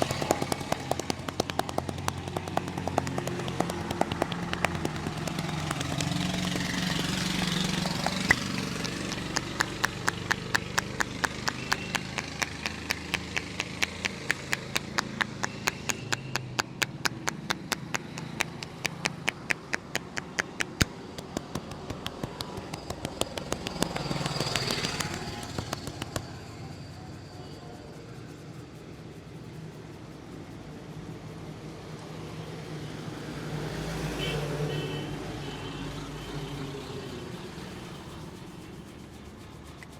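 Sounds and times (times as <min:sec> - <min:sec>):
hands slapping in massage: 0:00.0 - 0:26.3
street noise: 0:00.0 - 0:39.9.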